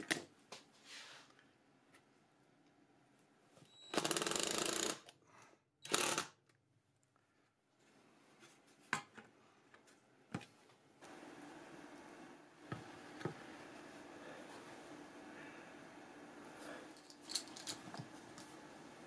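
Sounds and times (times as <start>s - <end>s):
power tool rattling: 3.9s - 5.1s, 5.8s - 6.3s.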